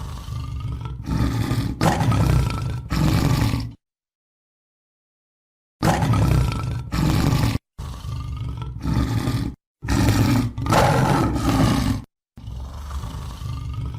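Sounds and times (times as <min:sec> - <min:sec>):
tiger roaring: 0:00.0 - 0:03.8, 0:05.8 - 0:13.9.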